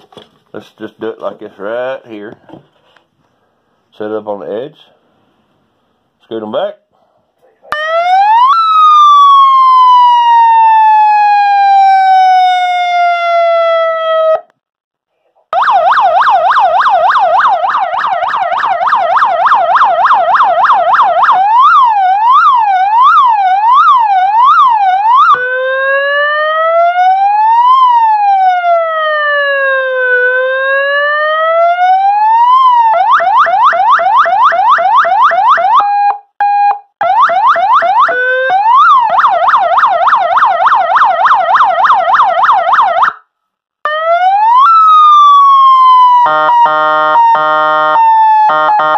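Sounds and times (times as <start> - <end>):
electronic police siren: 7.7 - 14.5, 15.6 - 43.3, 43.9 - 48.9.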